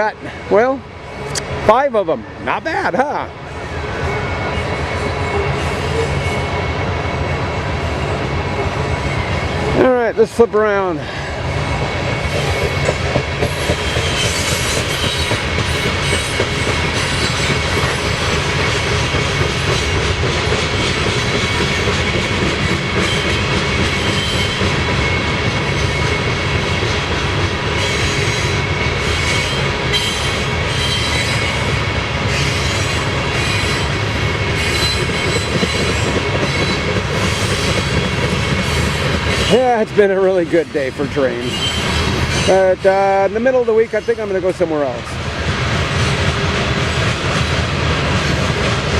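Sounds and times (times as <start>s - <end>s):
freight train rolling past: 0.0s - 48.9s
high wheel squeal: 13.6s - 18.4s, 23.0s - 26.3s, 27.8s - 31.7s, 34.6s - 38.0s, 41.2s - 42.9s.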